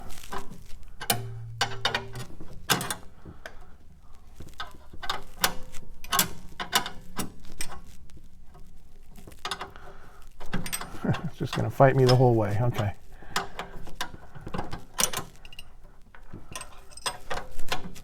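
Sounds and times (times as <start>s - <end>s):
wrench clinking on metal parts: 0.3s - 3.0s, 10.4s - 18.0s.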